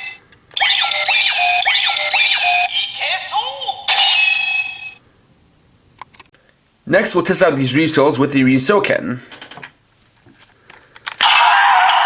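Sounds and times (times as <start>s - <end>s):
toy electronic sound effects: 0.0s - 5.0s, 11.2s - 12.0s.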